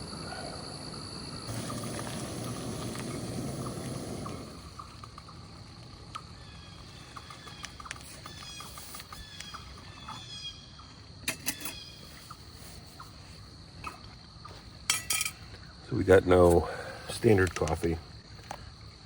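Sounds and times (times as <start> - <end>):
birds chirping: 0.0 - 18.8
high insect drone: 0.0 - 19.0.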